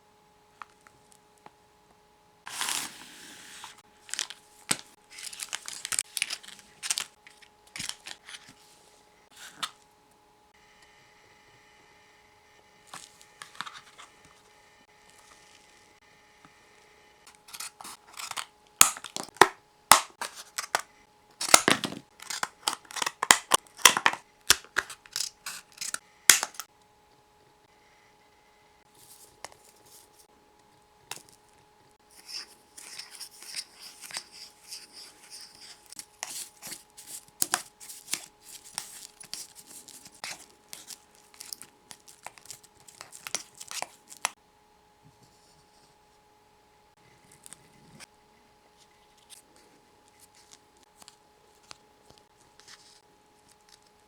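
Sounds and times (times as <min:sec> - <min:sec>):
packaging tearing: 0:02.5 - 0:08.5, 0:17.3 - 0:20.8, 0:21.4 - 0:26.7, 0:32.2 - 0:44.4
plastic and paper crinkling: 0:02.5 - 0:09.8, 0:12.9 - 0:14.5, 0:17.3 - 0:26.7, 0:32.1 - 0:44.4
scissors snipping: 0:21.4 - 0:26.7.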